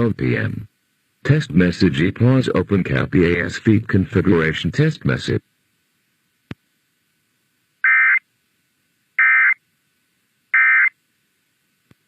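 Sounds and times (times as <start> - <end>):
digital data tone bursts: 7.8 - 8.2, 9.2 - 9.6, 10.6 - 10.9.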